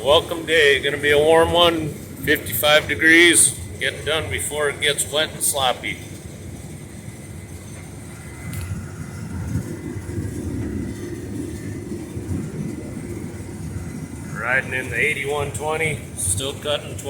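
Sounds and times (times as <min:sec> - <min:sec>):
combine harvester rumbling: 0:00.0 - 0:17.0.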